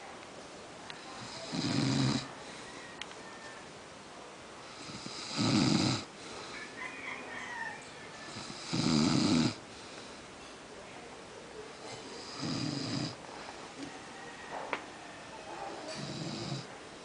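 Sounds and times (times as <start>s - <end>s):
man snoring: 1.2s - 2.3s, 4.7s - 6.1s, 8.3s - 9.6s, 12.2s - 13.2s, 16.0s - 16.7s
quiet breathing: 2.2s - 3.4s, 6.0s - 8.6s, 9.5s - 11.0s.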